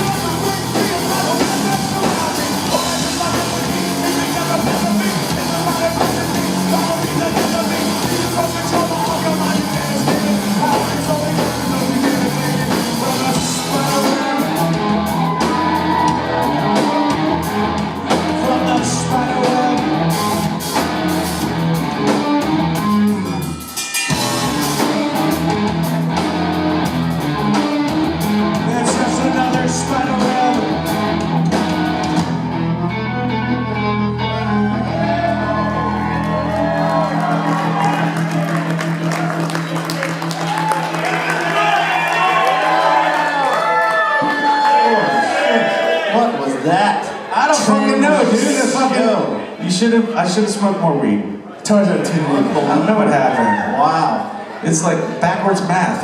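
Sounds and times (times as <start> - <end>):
live rock band playing: 0.0 - 44.6.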